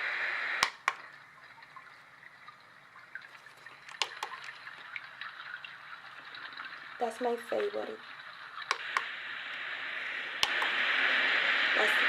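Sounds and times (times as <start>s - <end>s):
white noise hiss: 0.0s - 2.2s, 6.0s - 12.0s
button clicks: 0.6s - 1.0s, 3.9s - 4.4s, 8.7s - 9.1s, 10.4s - 10.7s
trickling brook water: 0.9s - 8.8s.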